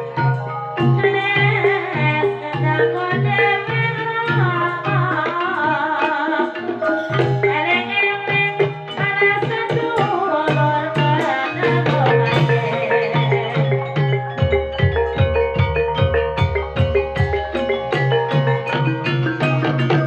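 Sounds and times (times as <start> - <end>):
high wavering melody: 0.0 - 20.0
ringing metallophone notes: 0.0 - 20.0
hand drum strokes: 8.3 - 20.0.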